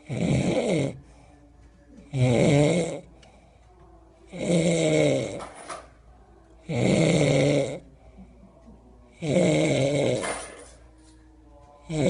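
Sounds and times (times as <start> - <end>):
loud snoring: 0.0 - 1.0, 2.1 - 3.1, 4.3 - 5.5, 6.6 - 7.8, 9.2 - 10.5
quiet breathing: 0.9 - 12.0.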